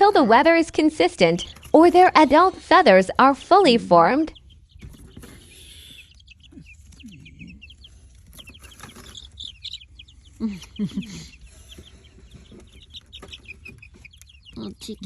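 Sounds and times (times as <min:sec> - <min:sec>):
chicks peeping and clucking: 0:00.0 - 0:15.0
louder lower chicken calls: 0:04.8 - 0:12.6.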